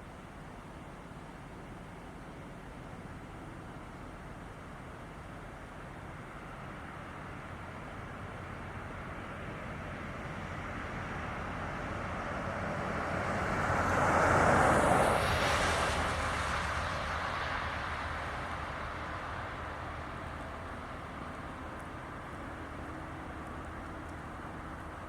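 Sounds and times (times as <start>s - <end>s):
vehicle passing by: 10.5s - 22.5s.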